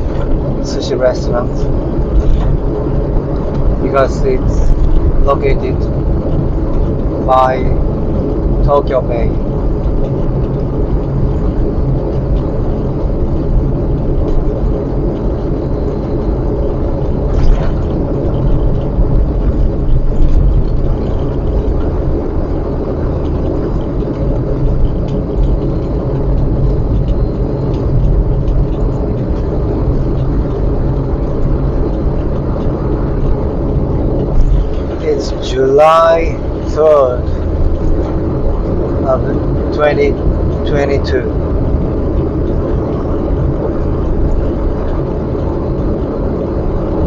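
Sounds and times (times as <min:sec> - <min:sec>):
car engine and road noise: 0:00.0 - 0:47.0.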